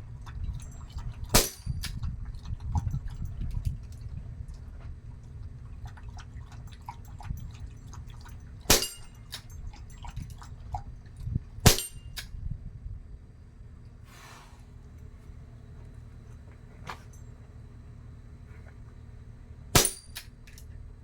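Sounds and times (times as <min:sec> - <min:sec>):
air revolver shots: 0:01.4 - 0:01.8, 0:08.7 - 0:09.1, 0:11.7 - 0:12.0, 0:19.8 - 0:20.2.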